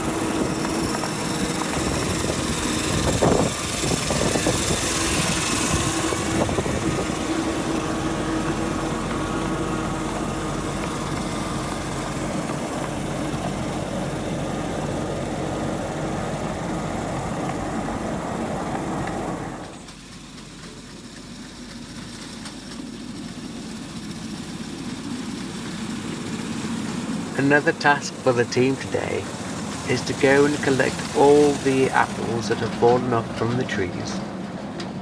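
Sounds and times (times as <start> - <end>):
miniature locomotive running: 0.0 - 35.0.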